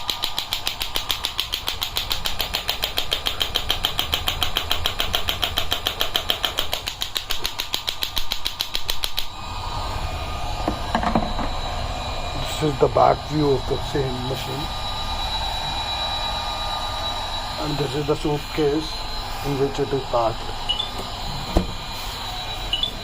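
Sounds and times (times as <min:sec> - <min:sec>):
rapid sharp clicks: 0:00.0 - 0:09.3
steady hum: 0:00.0 - 0:23.0.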